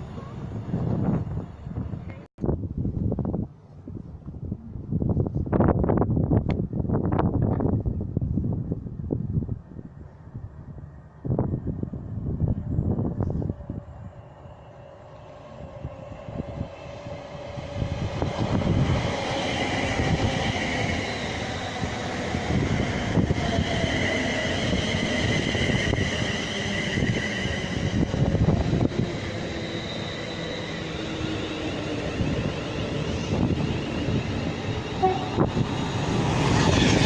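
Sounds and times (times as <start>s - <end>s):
train rumbling past: 8.6s - 37.0s.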